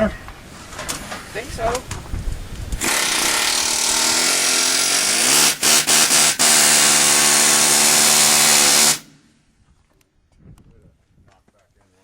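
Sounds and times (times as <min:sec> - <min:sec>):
electric drill drilling into metal: 0:02.8 - 0:09.1.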